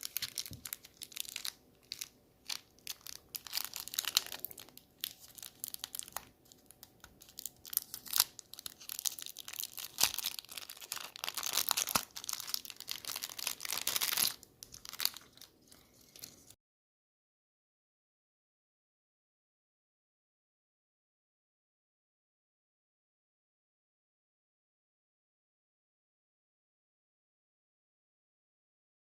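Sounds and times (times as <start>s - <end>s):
packaging wrapper crinkling: 0.0s - 16.6s.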